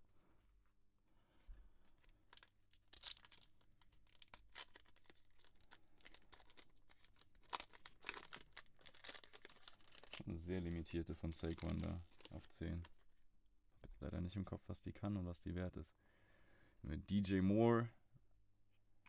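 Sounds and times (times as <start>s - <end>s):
plastic wrapping crinkling: 2.0s - 13.0s.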